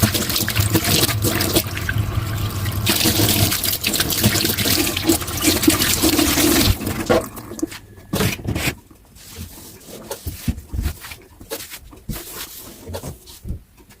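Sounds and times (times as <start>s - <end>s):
brief noisy rush: 0.2s - 7.8s.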